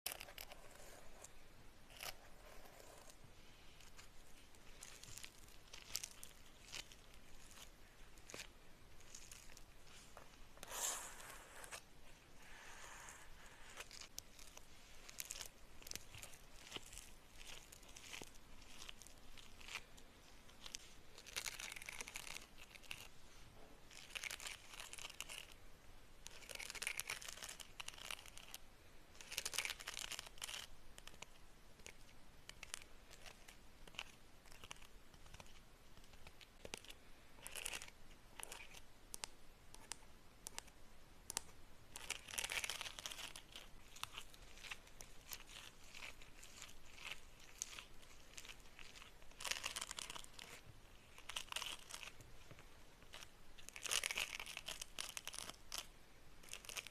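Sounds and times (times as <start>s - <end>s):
plastic wrappers crinkling: 3.8s - 10.3s, 13.4s - 23.1s, 26.2s - 28.6s, 29.2s - 38.8s, 41.9s - 56.9s.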